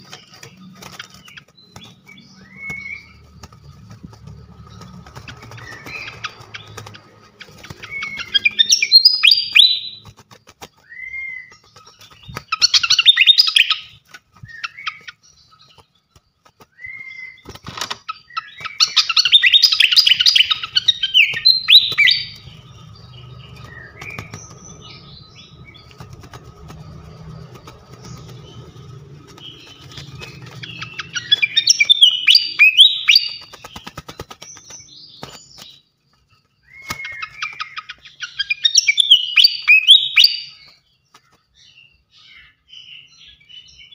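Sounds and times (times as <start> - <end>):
songbird twittering: 0.0 - 43.9
bird whistled notes: 7.8 - 10.0, 30.6 - 33.5, 36.7 - 40.7.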